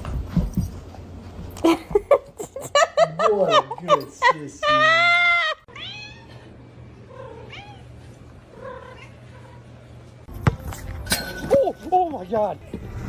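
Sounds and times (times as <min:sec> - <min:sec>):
cat meowing: 0:05.7 - 0:06.3.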